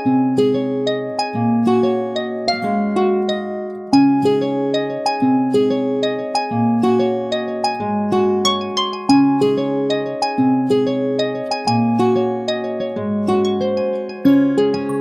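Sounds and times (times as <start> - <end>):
phone ringtone plucked melody: 14.0 - 15.0.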